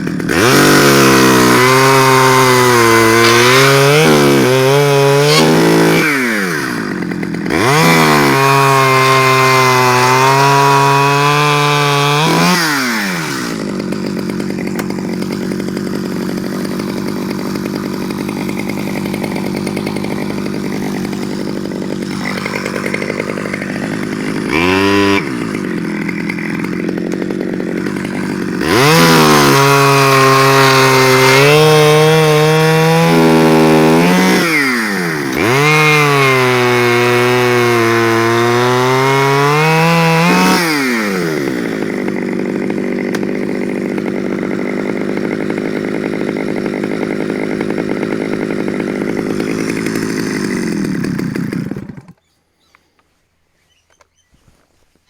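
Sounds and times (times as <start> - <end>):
chainsaw idling and revving: 0.0 - 52.3.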